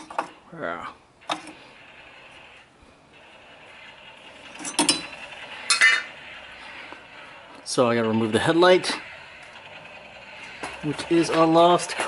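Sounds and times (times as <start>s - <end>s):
metal tools clinking and rattling: 4.4s - 6.1s.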